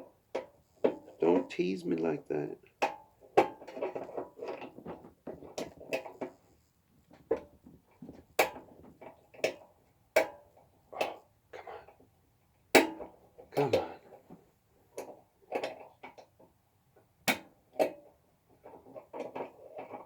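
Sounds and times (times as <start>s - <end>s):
handling and rustling: 2.8s - 9.8s.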